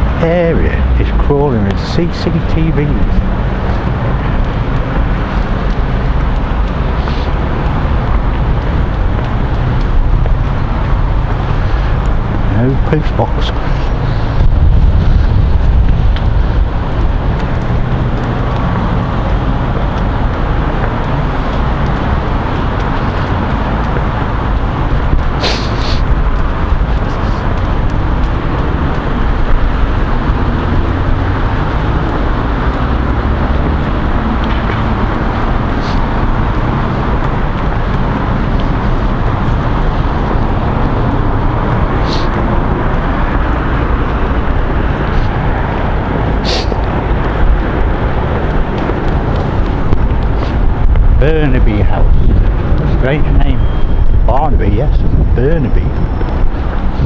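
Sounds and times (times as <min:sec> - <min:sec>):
wind buffeting microphone: 0:00.0 - 0:57.0.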